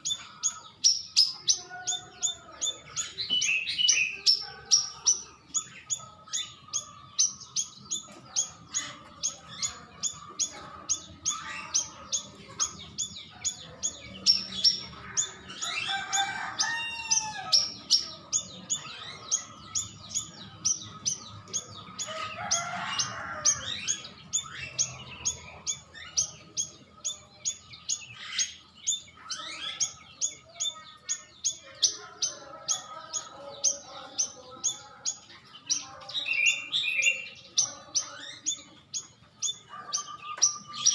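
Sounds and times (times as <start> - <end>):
songbird chirping and warbling: 0.0 - 40.9.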